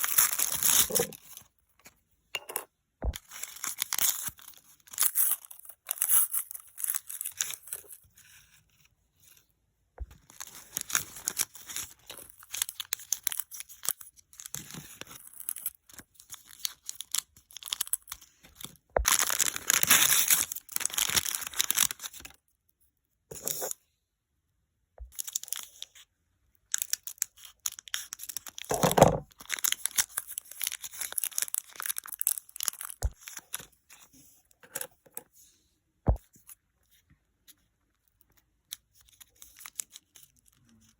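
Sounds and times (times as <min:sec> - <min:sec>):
packaging tearing and crinkling: 0:00.0 - 0:01.4, 0:10.2 - 0:22.3, 0:26.7 - 0:33.6, 0:39.1 - 0:40.6.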